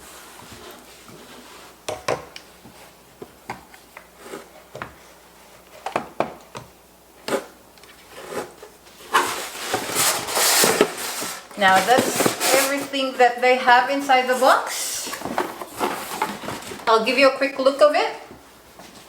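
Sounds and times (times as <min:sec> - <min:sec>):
packaging rustling: 0:09.0 - 0:13.2, 0:14.0 - 0:16.9.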